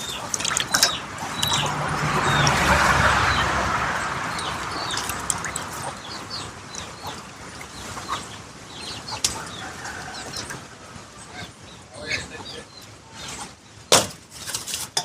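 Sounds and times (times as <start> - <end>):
liquid being poured: 0.0 - 8.3
birds chirping: 0.0 - 13.9.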